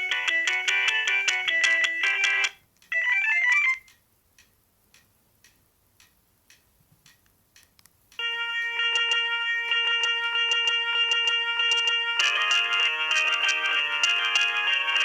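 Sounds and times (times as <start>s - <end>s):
phone ringtone melodies: 0.0s - 3.9s, 8.2s - 15.0s
faint regular ticks: 3.8s - 8.2s.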